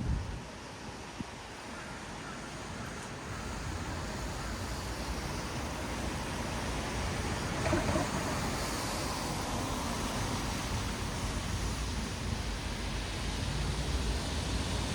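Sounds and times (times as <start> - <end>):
low rumble of engines: 0.0 - 14.9
tyres hissing on wet asphalt: 0.1 - 14.9.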